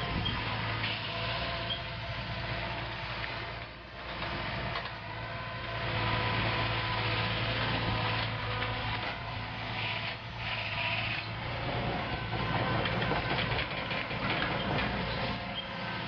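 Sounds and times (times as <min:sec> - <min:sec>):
excavator diesel engine running: 0:00.0 - 0:16.0.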